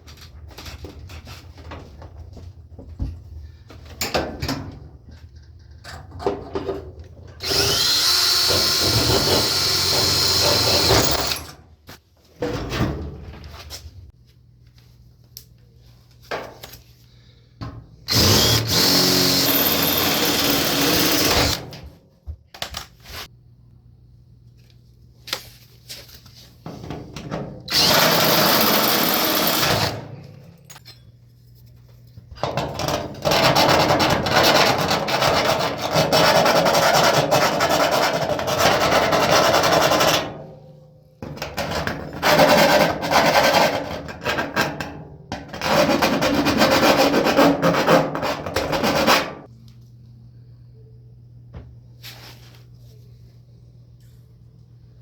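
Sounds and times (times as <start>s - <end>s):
power drill drilling sheet metal: 7.4s - 11.6s, 18.1s - 21.8s, 27.7s - 30.2s.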